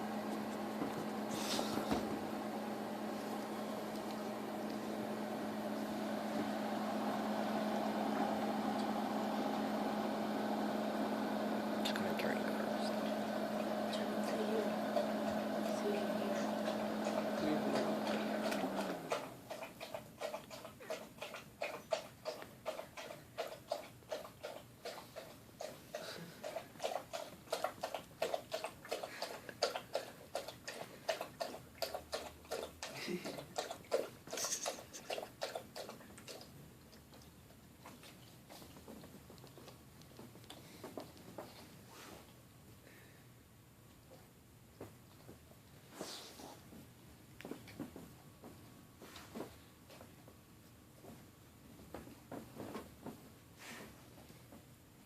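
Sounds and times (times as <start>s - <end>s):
dog eating from bowl: 0.0s - 41.8s
appliance low hum and hiss: 0.0s - 55.0s.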